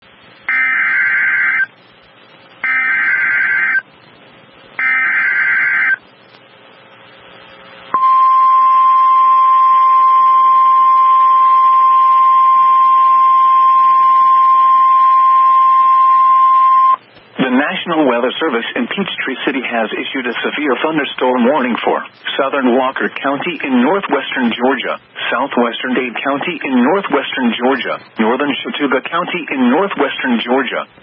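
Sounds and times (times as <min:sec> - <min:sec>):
steady alarm tone: 0:00.5 - 0:01.7, 0:02.6 - 0:03.8, 0:04.8 - 0:06.0, 0:07.9 - 0:17.0
harsh data screech: 0:02.6 - 0:03.8, 0:04.8 - 0:06.0.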